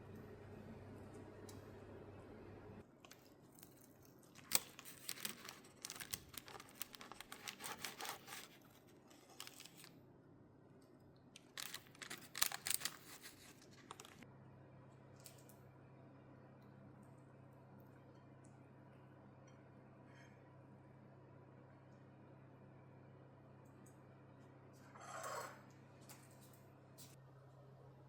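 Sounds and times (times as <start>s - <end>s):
low steady hum: 0.0s - 28.0s
crackling tearing handling noise: 3.0s - 10.0s, 11.3s - 14.2s.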